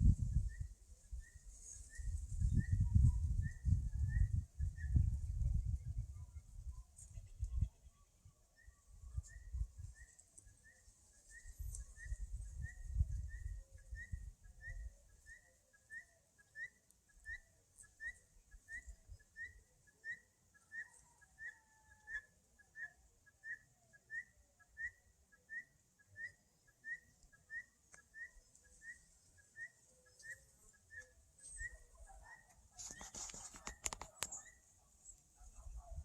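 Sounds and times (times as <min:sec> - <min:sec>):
wind rumble on microphone: 0:00.0 - 0:07.8, 0:11.5 - 0:14.9.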